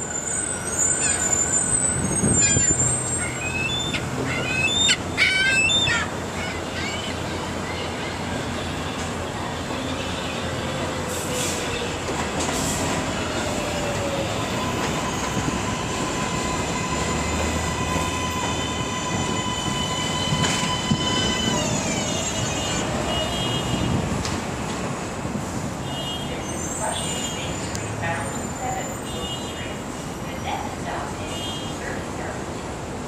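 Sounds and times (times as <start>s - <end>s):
subway wheels squealing: 0.0s - 24.1s, 26.2s - 31.0s
subway train rumble: 0.0s - 33.0s.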